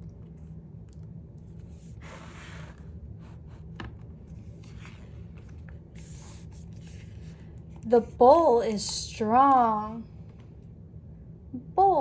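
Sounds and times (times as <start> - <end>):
steady low hum: 0.0 - 12.0
paper pages rustling: 1.5 - 7.9.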